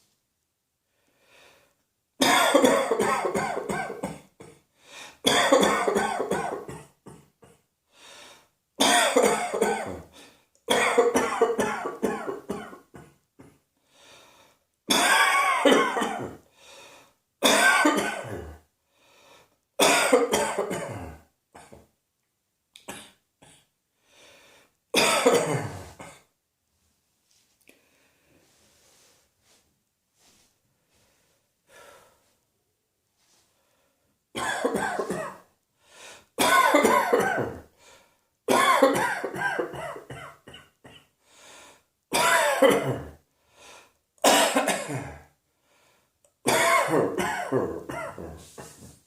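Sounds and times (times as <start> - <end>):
person breathing: 0.9 - 1.8, 4.7 - 5.2, 7.9 - 8.6, 10.1 - 10.6, 13.8 - 14.7, 16.4 - 17.2, 18.9 - 19.6, 23.9 - 24.8, 27.6 - 29.6, 30.2 - 32.4, 33.2 - 34.2, 35.8 - 36.4, 37.7 - 38.3, 41.2 - 41.9, 43.3 - 44.0, 45.5 - 46.2
person coughing: 2.2 - 4.6, 5.2 - 7.6, 8.8 - 10.1, 10.7 - 13.6, 14.9 - 16.4, 17.4 - 18.6, 19.8 - 21.8, 25.0 - 26.3, 34.4 - 35.5, 36.4 - 37.7, 38.5 - 41.1, 42.1 - 43.2, 44.2 - 45.3, 46.5 - 49.0.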